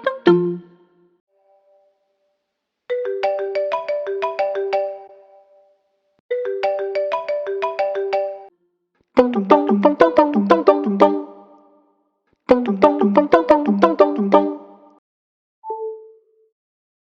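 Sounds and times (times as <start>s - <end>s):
plucked ringtone melody: 2.9s - 5.2s, 6.3s - 8.5s, 9.3s - 11.4s, 12.7s - 14.7s
tune with percussive hits: 9.2s - 11.6s, 12.5s - 14.9s.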